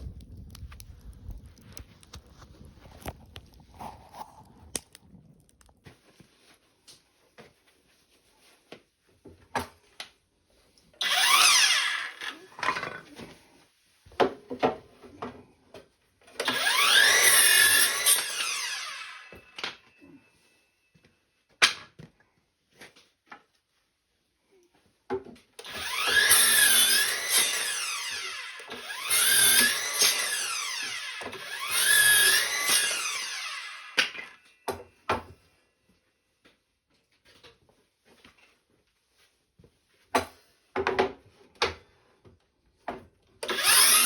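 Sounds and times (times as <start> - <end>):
small power tool running: 11.0 - 12.9, 16.4 - 19.6, 25.6 - 34.4, 43.4 - 44.0.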